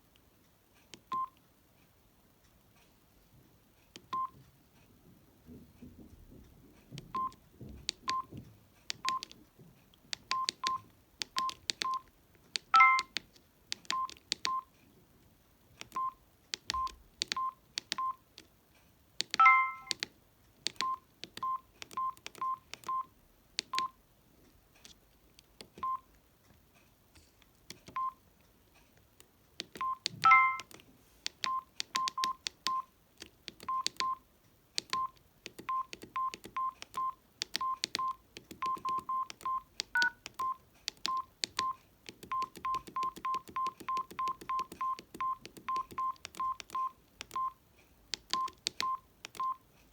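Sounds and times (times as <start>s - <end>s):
phone keypad beeps: 1.0s - 1.4s, 4.0s - 4.4s, 7.1s - 7.4s, 8.0s - 8.3s, 9.0s - 9.4s, 10.2s - 13.2s, 13.8s - 14.7s, 15.9s - 18.2s, 19.2s - 20.0s, 20.7s - 24.0s, 25.8s - 26.1s, 27.9s - 28.2s, 29.7s - 30.8s, 31.4s - 32.9s, 33.5s - 34.2s, 34.8s - 47.6s, 48.2s - 49.6s
key press clicks: 4.0s - 4.3s, 7.0s - 9.4s, 10.1s - 14.7s, 15.8s - 18.5s, 19.2s - 24.0s, 24.8s - 26.1s, 27.7s - 28.2s, 29.1s - 34.2s, 34.8s - 49.7s
multi-note phone tones: 12.7s - 13.2s, 19.4s - 20.0s, 29.8s - 30.7s, 35.8s - 40.6s.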